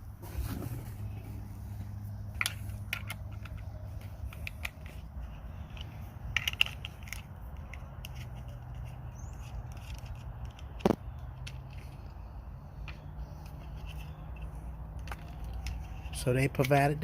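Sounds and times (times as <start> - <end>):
clicks and scrapes of chainsaw parts: 2.2 - 12.2, 12.8 - 17.0.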